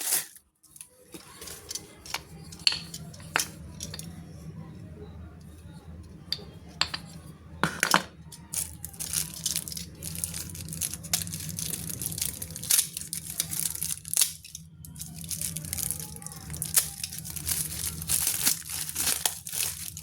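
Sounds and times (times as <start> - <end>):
packaging crinkling and tearing: 0.0 - 4.1, 8.5 - 20.0.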